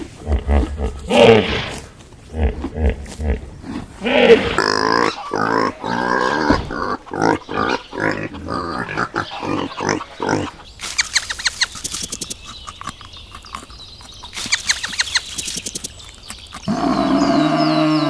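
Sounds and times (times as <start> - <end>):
pigs grunting: 0.0 - 10.7, 16.6 - 18.0
long loud animal call: 4.1 - 10.6, 16.7 - 18.0
rapid clicking and squeaks: 10.8 - 16.7.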